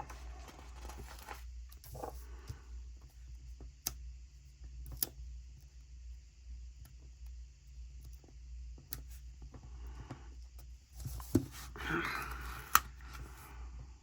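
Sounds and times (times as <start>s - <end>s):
paper rustling: 0.0s - 2.2s
low steady hum: 0.0s - 14.0s.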